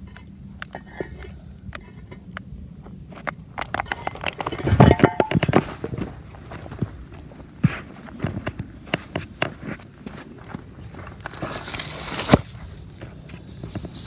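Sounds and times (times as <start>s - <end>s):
hard objects clicking and knocking: 0.0s - 2.5s, 3.2s - 6.0s
loud clatter with ringing tone: 3.6s - 5.7s.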